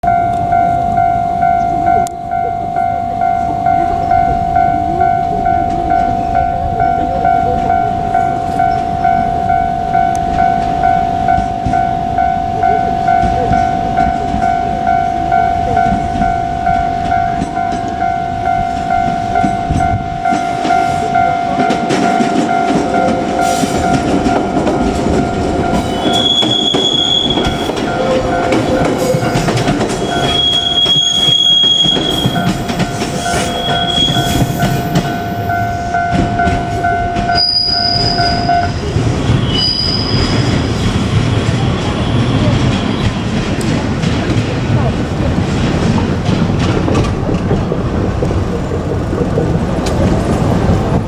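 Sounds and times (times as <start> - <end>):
level-crossing warning bell: 0.0 - 51.0
train wheels clicking over rail joints: 3.2 - 51.0
high wheel squeal: 20.7 - 43.4.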